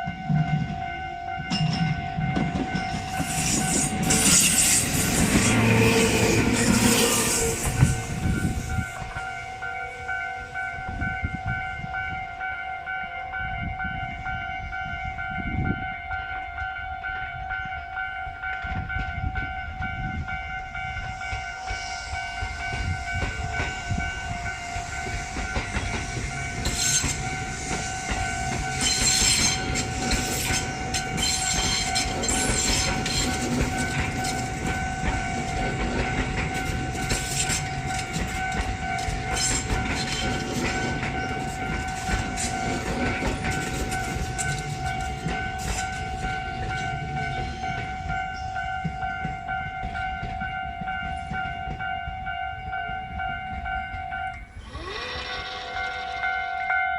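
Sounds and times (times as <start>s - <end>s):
train rumble: 0.0s - 56.9s
wheels clacking over rail joints: 24.7s - 56.3s
level crossing bell ringing: 26.4s - 56.9s.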